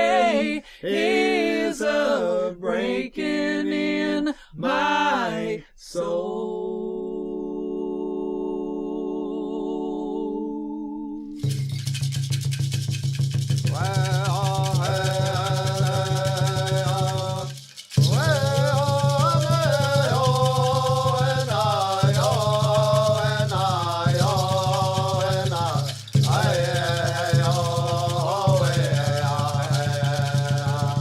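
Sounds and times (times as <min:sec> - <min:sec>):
voices singing long phrases: 0:00.0 - 0:11.3, 0:13.7 - 0:31.0
rattle shaken rhythmically: 0:11.4 - 0:31.0.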